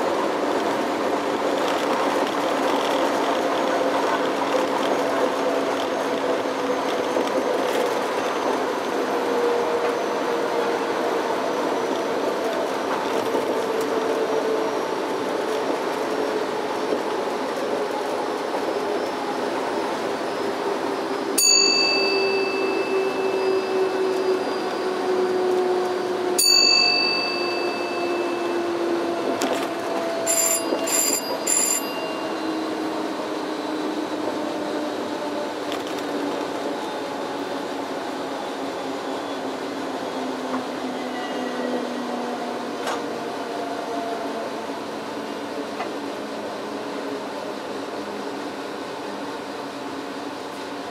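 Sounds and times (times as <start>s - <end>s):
locomotive motor whine: 3.4s - 49.2s
ringing chimes: 21.4s - 24.6s, 26.4s - 29.2s, 30.1s - 32.9s
short high beeps: 30.2s - 32.4s.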